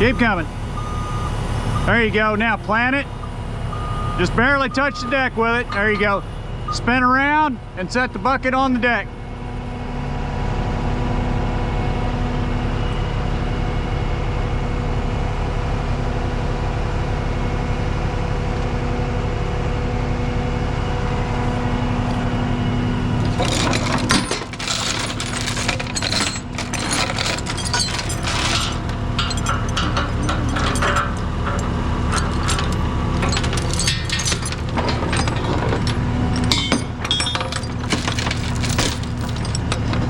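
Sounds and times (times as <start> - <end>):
metallic clinking and clanking: 23.0 - 40.0
diesel engine idling: 28.8 - 37.0.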